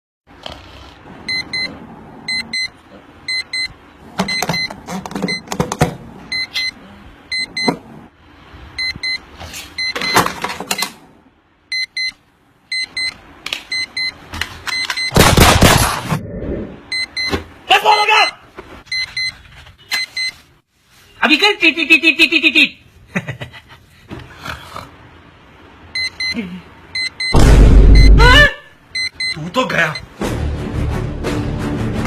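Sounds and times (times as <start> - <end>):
alarm clock beeping: 1.3 - 1.7, 2.3 - 5.5, 6.3 - 7.7, 8.8 - 9.2, 11.7 - 15.2, 16.9 - 17.4, 26.0 - 28.2, 29.0 - 30.1.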